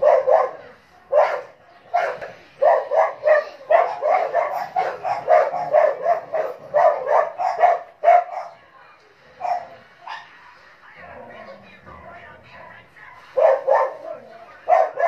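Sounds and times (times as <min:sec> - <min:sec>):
dog barking rapidly: 0:00.0 - 0:08.6, 0:13.4 - 0:15.0.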